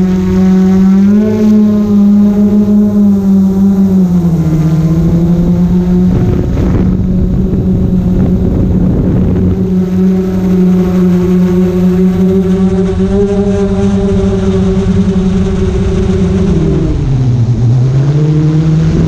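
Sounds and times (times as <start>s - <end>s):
drone propellers humming: 0.0s - 19.0s
wind noise on microphone: 0.0s - 19.0s.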